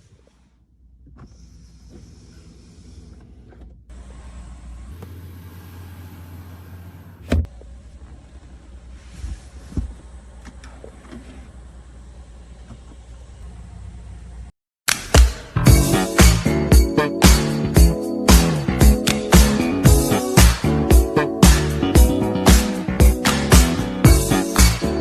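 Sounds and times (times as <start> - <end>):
vehicle low rumble: 1.8 - 14.5.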